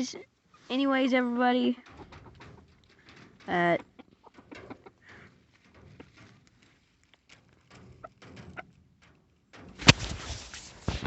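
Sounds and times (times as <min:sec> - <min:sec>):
chickens clucking: 0:01.8 - 0:06.8.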